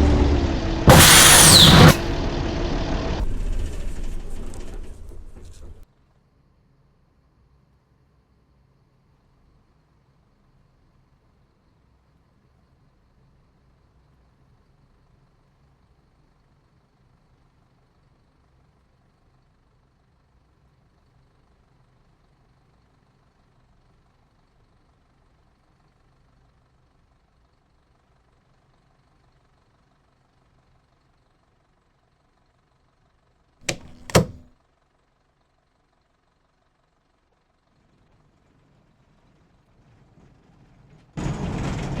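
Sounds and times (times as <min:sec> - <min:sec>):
sharp bangs: 0:00.9 - 0:02.4.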